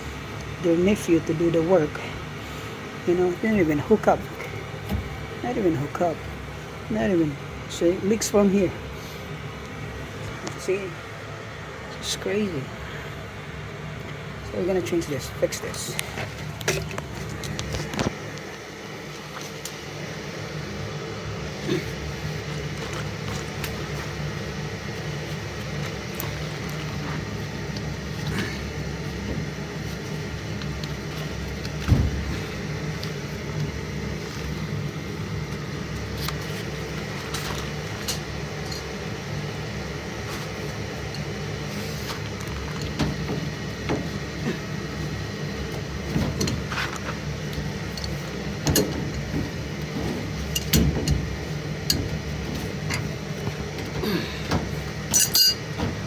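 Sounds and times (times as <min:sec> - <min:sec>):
furnace humming: 0:00.0 - 0:56.0
tools clicking and knocking: 0:46.1 - 0:53.1, 0:53.8 - 0:56.0.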